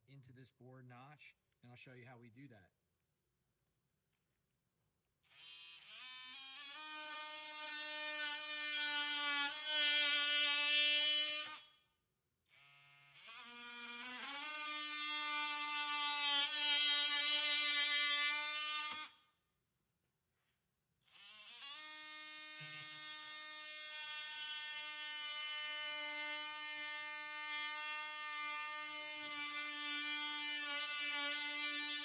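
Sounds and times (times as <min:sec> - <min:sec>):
oscillating multi-tool cutting wood: 0:05.3 - 0:11.7, 0:12.5 - 0:19.2, 0:21.1 - 0:32.0.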